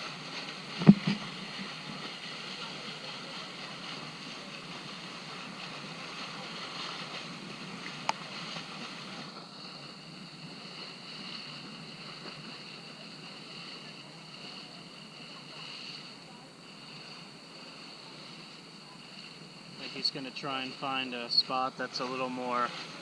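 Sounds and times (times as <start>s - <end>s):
wind on microphone: 0.0s - 20.1s
motorboat engine drone: 0.0s - 23.0s
rushing water: 0.0s - 23.0s.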